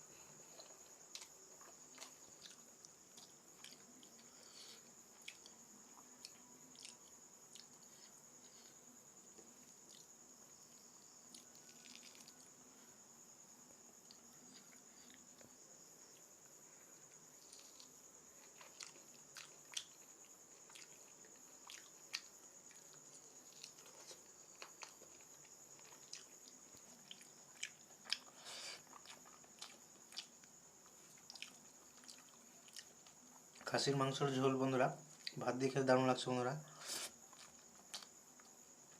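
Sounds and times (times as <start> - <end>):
chewing and lip-smacking: 0.5 - 4.4, 5.2 - 8.1, 11.3 - 12.5, 17.3 - 33.6, 36.9 - 38.6.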